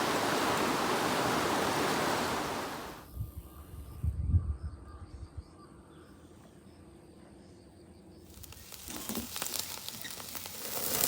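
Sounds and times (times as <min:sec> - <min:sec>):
insects chirping: 0:00.0 - 0:03.7, 0:05.8 - 0:11.0
broad hissing noise: 0:00.0 - 0:04.0, 0:08.2 - 0:11.0.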